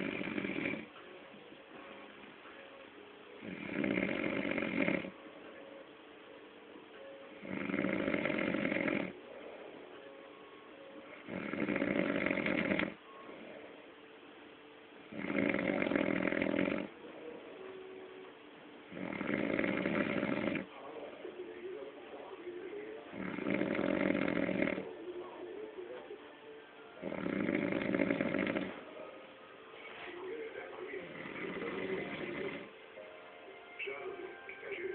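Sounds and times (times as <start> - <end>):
man snoring: 0.0 - 0.9, 3.4 - 5.2, 7.4 - 9.2, 11.1 - 13.0, 15.1 - 16.9, 18.9 - 20.7, 23.1 - 24.9, 27.0 - 28.8, 31.0 - 32.7.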